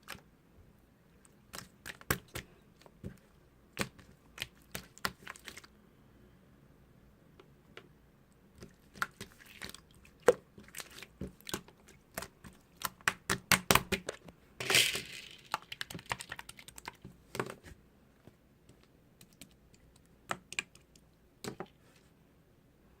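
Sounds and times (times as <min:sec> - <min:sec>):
slime squish: 0:01.2 - 0:05.7, 0:08.5 - 0:14.2.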